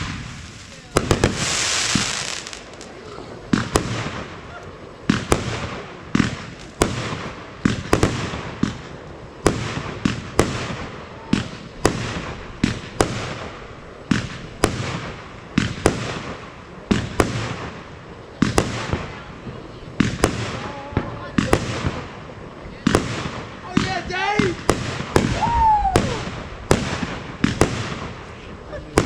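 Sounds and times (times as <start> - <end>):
fireworks bangs: 0.0 - 29.0.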